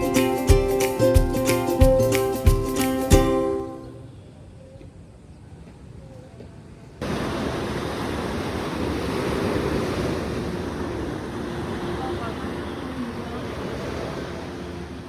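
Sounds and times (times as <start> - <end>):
sea surf: 0.0 - 3.9, 7.0 - 15.0.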